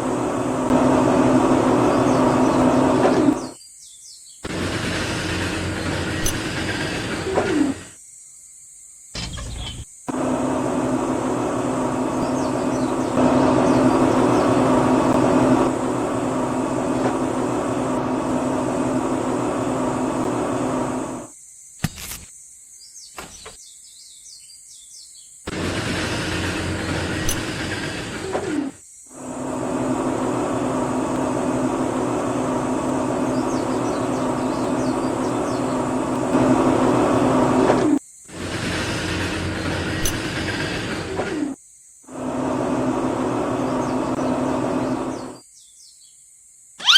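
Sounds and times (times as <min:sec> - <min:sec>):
mechanical hum with low tone: 0:00.0 - 0:08.0, 0:09.2 - 0:21.4, 0:24.9 - 0:46.1
birds chirping: 0:00.1 - 0:07.9, 0:10.6 - 0:21.3, 0:22.8 - 0:37.6, 0:42.4 - 0:46.2.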